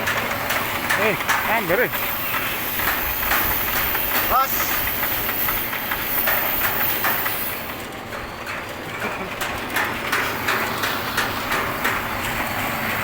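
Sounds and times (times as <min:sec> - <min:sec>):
pellet mill running: 0:00.0 - 0:13.0.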